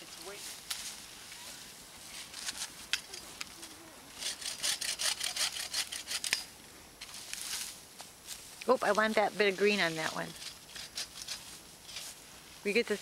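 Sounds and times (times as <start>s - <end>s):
hand saw cutting a branch: 4.2s - 6.4s, 10.2s - 11.5s.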